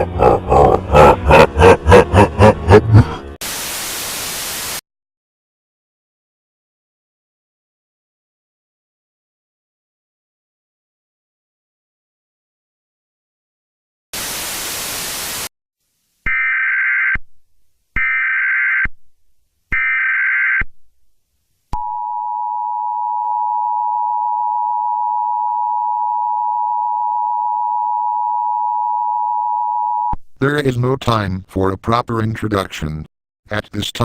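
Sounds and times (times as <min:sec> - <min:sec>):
burst of static: 0:03.4 - 0:04.8, 0:14.2 - 0:15.5.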